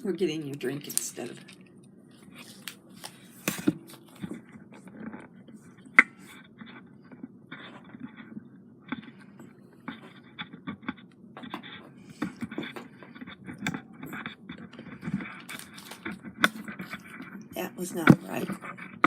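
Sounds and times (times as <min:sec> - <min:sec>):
hands handling craft pieces: 0:00.5 - 0:06.8, 0:09.8 - 0:17.3.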